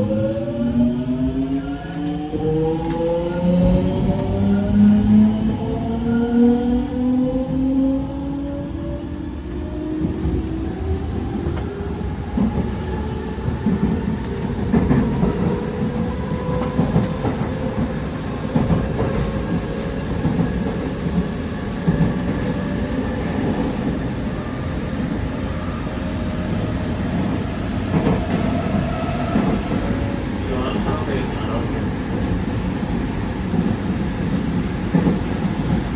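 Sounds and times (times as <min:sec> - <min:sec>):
rail joint clicks: 0:01.8 - 0:05.1, 0:11.2 - 0:30.2.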